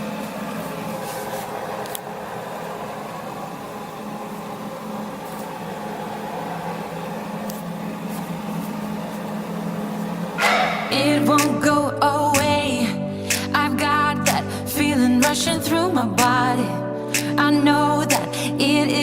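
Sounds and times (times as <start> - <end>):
low machine hum with hiss: 0.0 - 19.0.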